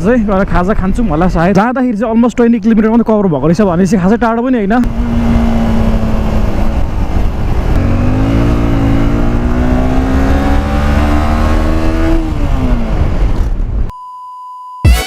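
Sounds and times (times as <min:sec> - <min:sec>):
motorcycle engine accelerating: 0:04.8 - 0:13.9.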